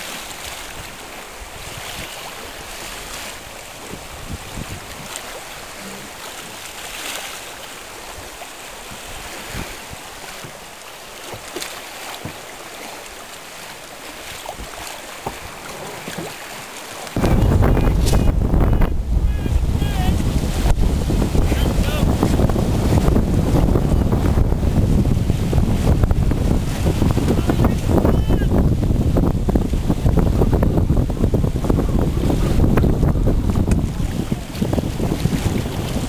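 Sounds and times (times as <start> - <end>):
wind on microphone: 0.0 - 7.2, 7.8 - 10.5, 17.1 - 36.0
water lapping: 0.0 - 36.0.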